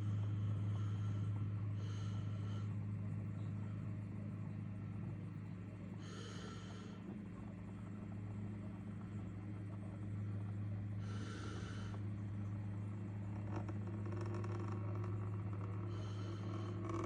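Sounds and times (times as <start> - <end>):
sand table low hum: 0.0 - 17.0.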